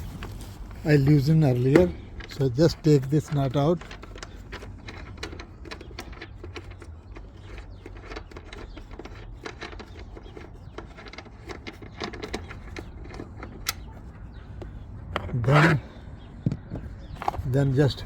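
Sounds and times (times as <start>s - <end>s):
small metallic clicks and rattling: 1.0s - 15.3s.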